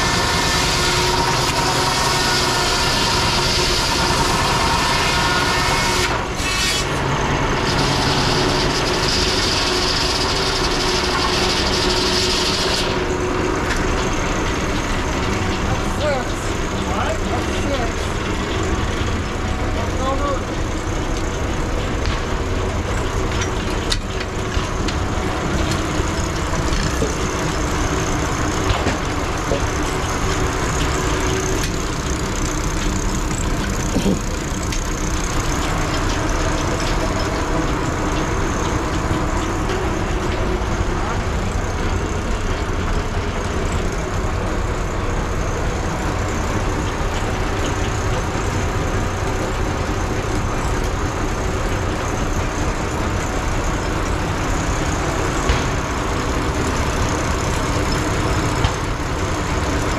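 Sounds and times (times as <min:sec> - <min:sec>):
steam traction engine running: 0:00.0 - 0:59.9
people talking: 0:15.7 - 0:18.1, 0:19.7 - 0:20.6.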